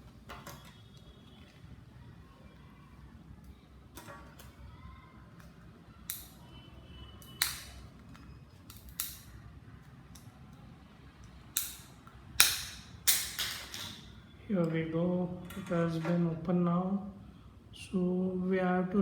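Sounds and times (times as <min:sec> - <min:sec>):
plastic clips snapping: 0:05.4 - 0:06.4, 0:07.2 - 0:07.9, 0:08.6 - 0:09.4, 0:11.2 - 0:14.0.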